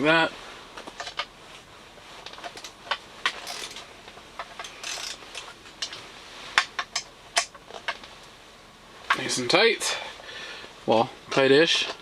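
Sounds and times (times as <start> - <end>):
metal clicks: 2.3 - 6.0.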